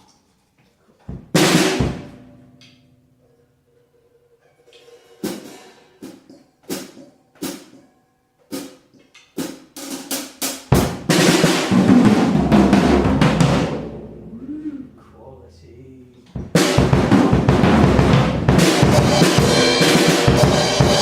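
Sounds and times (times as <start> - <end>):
drum kit playing: 1.1 - 2.7, 4.7 - 7.9, 8.5 - 15.1, 16.2 - 21.0
crashing cymbals: 18.6 - 21.0.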